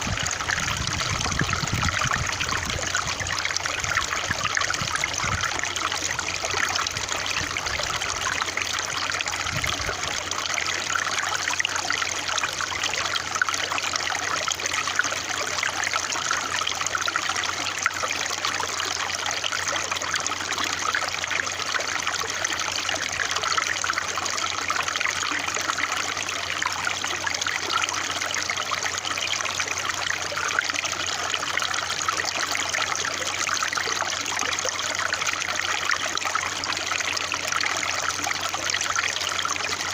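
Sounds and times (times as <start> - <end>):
stream water trickling: 0.0 - 39.9.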